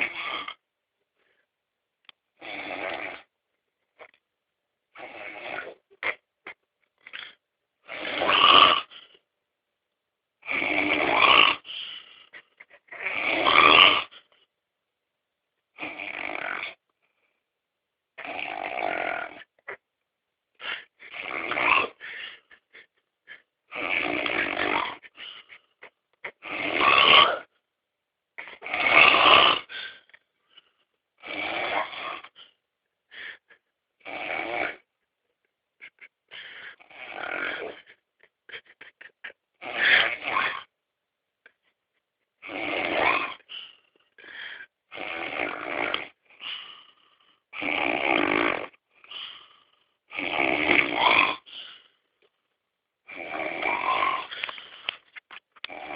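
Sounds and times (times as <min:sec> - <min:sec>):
loud heavy snoring: 0:00.0 - 0:00.6, 0:02.4 - 0:03.3, 0:05.0 - 0:06.2, 0:07.1 - 0:09.0, 0:10.4 - 0:14.2, 0:15.8 - 0:16.8, 0:18.2 - 0:19.8, 0:20.6 - 0:22.4, 0:23.7 - 0:25.6, 0:26.2 - 0:27.5, 0:28.4 - 0:30.1, 0:31.2 - 0:32.4, 0:34.0 - 0:34.9, 0:36.3 - 0:37.9, 0:39.6 - 0:40.7, 0:42.4 - 0:51.9, 0:53.1 - 0:54.8, 0:55.7 - 0:55.9.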